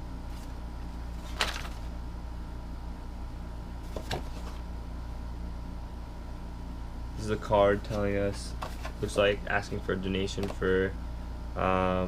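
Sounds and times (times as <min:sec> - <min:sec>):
low background hum: 0:00.0 - 0:12.0
rustles and clicks of handled items: 0:07.8 - 0:09.2.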